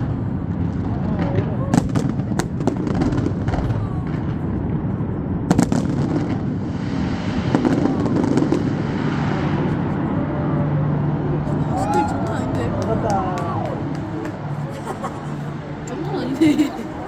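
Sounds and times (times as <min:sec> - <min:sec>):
crowd chatter: 0:00.0 - 0:05.2, 0:07.3 - 0:17.0
fireworks bursting: 0:01.4 - 0:09.9, 0:11.9 - 0:15.4.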